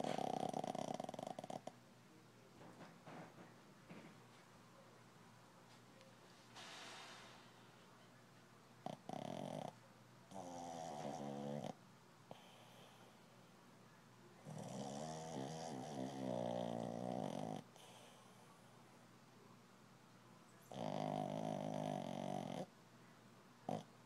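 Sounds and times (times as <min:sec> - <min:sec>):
dog snoring: 0:00.0 - 0:01.8, 0:08.8 - 0:13.0, 0:14.4 - 0:18.2, 0:20.7 - 0:22.7, 0:23.7 - 0:23.9.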